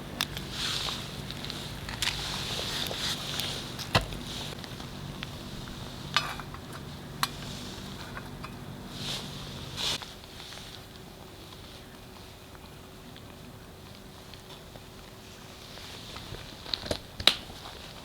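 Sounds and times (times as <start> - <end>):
food preparation clicks and rustles: 0.0 - 18.0
low steady hum: 0.0 - 18.0.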